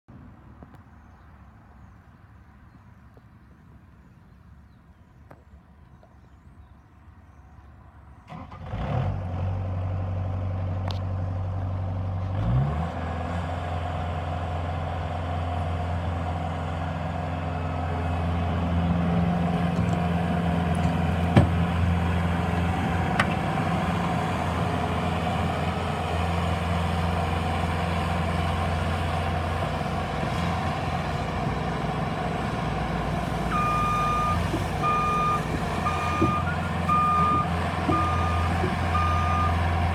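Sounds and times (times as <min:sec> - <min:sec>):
diesel engine starting and idling: 0:08.2 - 0:39.9.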